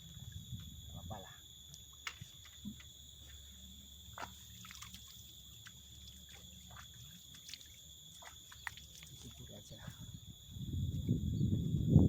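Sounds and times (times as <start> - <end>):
small ticks: 4.1 - 9.4.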